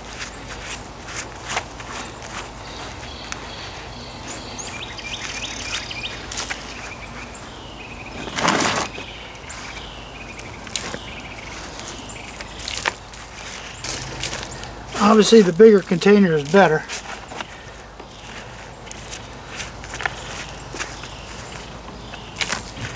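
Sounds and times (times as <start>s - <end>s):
small birds chirping: 0.0s - 22.9s
rustling scrape: 8.1s - 9.7s.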